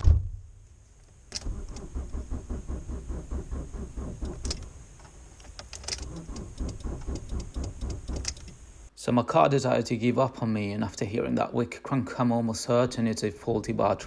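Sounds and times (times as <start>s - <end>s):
starter motor cranking engine: 1.2s - 8.9s.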